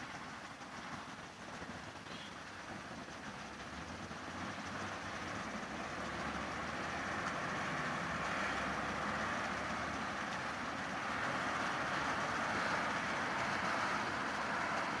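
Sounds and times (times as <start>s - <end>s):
vehicle engine rumble: 0.0s - 15.0s.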